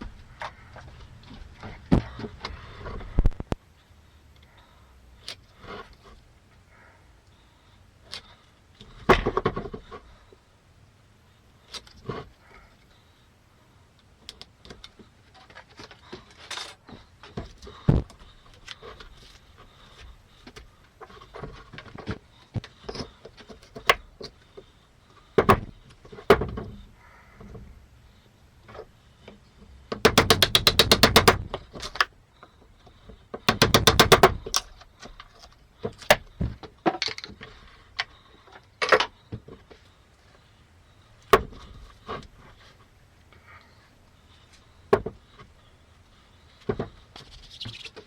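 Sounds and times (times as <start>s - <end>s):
hard objects knocking and clattering: 29.9s - 32.1s, 33.4s - 34.8s.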